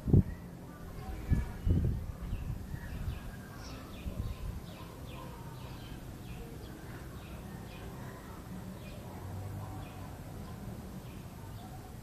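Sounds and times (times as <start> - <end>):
small bird chirping: 0.2 - 9.0.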